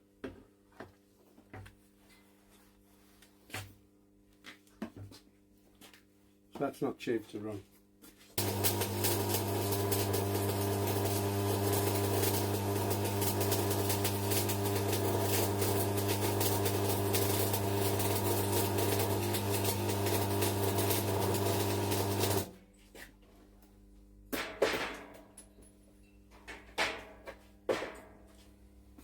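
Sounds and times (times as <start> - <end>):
welding arc crackling: 8.4 - 22.5
welding machine mains hum: 8.4 - 22.5.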